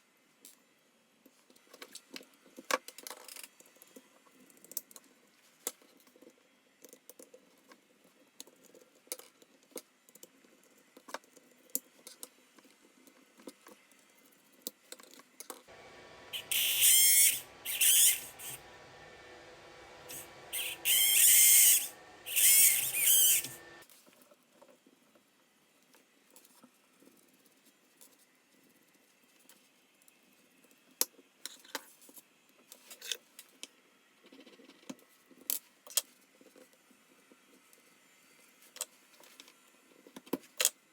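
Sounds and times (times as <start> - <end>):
servo high-pitched buzzing: 15.7 - 23.8.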